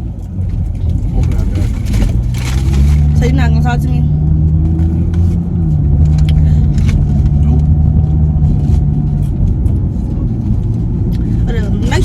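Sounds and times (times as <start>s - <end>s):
car engine humming: 0.0s - 12.0s
road noise: 0.0s - 12.0s.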